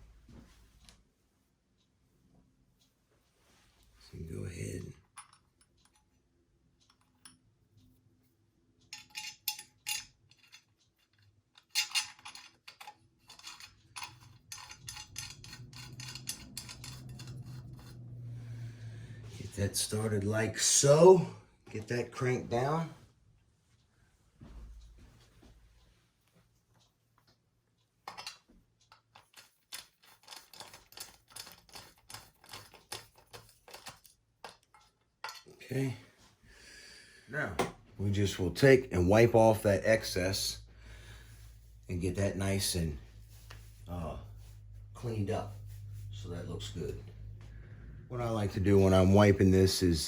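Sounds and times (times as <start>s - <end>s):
small metal parts clinking: 8.8s - 18.0s, 28.0s - 35.6s.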